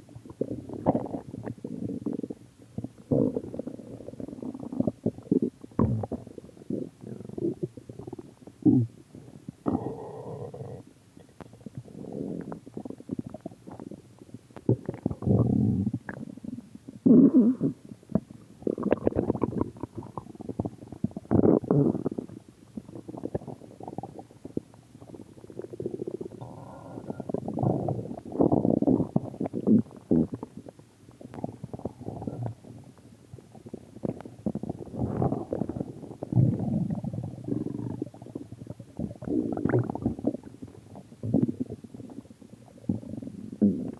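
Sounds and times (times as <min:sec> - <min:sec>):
stomach growling: 0:00.1 - 0:43.9.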